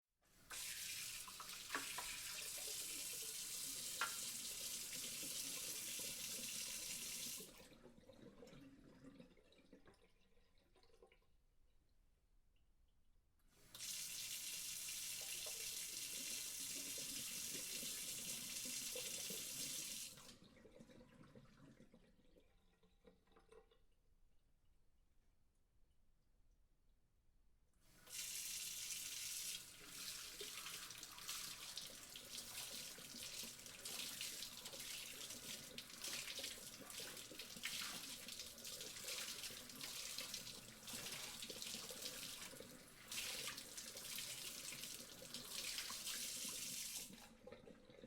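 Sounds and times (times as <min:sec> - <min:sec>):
water trickling and draining: 0:00.4 - 0:12.0, 0:13.5 - 0:24.1, 0:27.9 - 0:48.0
tap running water into sink: 0:00.5 - 0:08.5, 0:13.7 - 0:21.5, 0:28.1 - 0:48.0.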